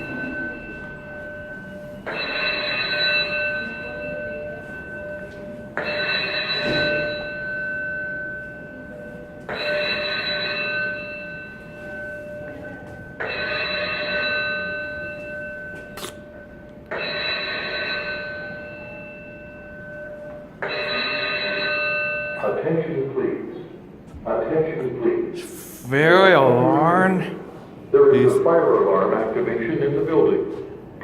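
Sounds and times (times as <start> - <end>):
fire alarm chime: 0.0 - 23.1.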